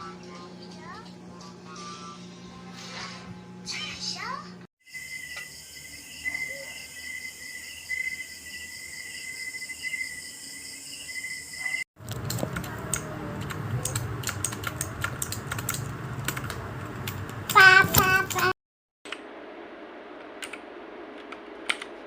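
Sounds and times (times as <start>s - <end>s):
pulsing high-pitched chirring: 4.8s - 11.8s
mechanical keyboard key clicks: 12.1s - 17.2s.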